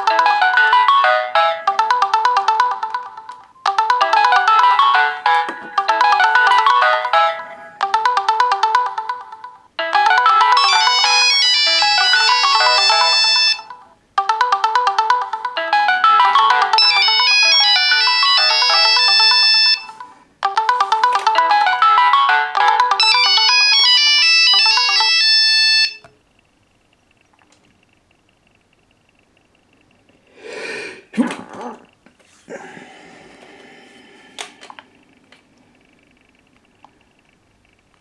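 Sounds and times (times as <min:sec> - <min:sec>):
mobile phones ringing: 0:00.0 - 0:26.2.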